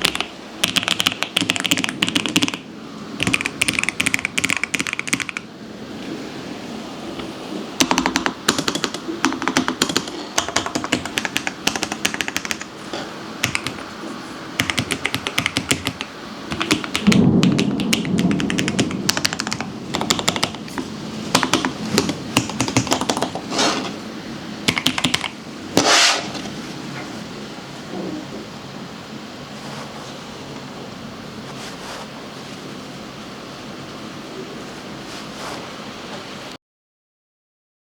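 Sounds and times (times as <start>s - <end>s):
mechanical keyboard key clicks: 0.0s - 2.6s, 24.7s - 25.3s.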